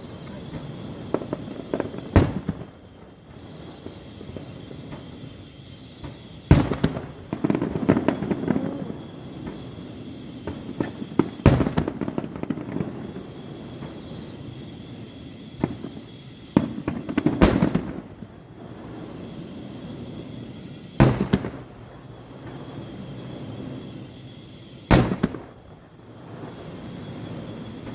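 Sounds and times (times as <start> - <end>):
firework bangs: 0.0 - 27.9
firework crackling: 0.0 - 27.9.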